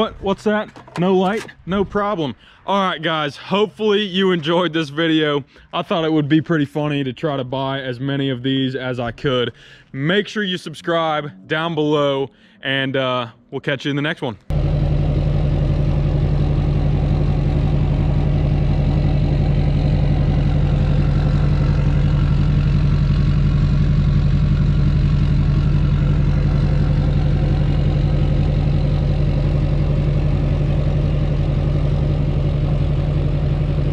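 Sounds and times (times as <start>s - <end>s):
diesel engine idling: 14.5s - 33.9s.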